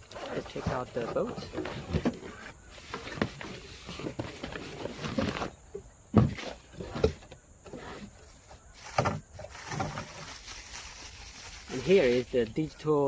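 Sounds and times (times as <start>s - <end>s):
bag rustling: 0.0s - 5.6s, 6.2s - 12.8s.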